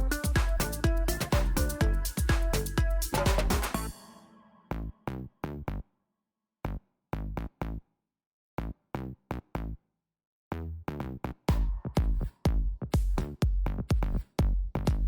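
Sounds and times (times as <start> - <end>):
electronic chord stabs: 0.0 - 4.9.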